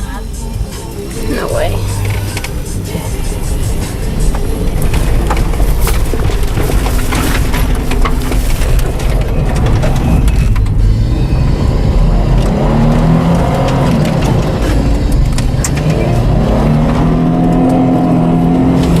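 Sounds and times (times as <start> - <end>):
car engine revving: 0.0 - 19.0.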